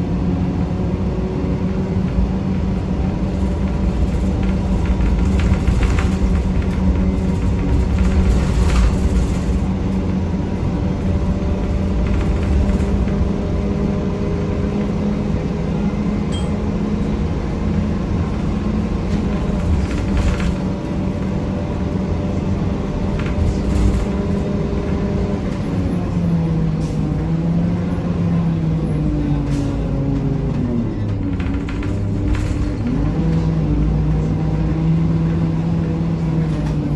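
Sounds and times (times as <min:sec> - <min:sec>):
bus engine grinding drone: 0:00.0 - 0:36.9
rattles and knocks: 0:03.2 - 0:10.2, 0:30.5 - 0:33.5.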